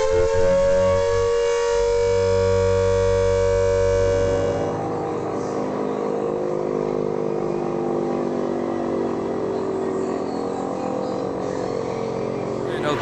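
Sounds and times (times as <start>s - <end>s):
air raid siren winding down: 0.0s - 4.7s.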